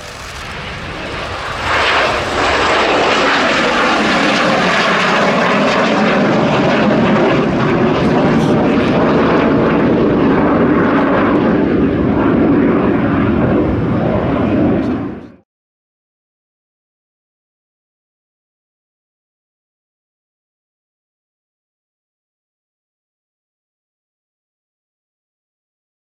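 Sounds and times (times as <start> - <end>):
jet engines roaring: 0.0 - 15.4.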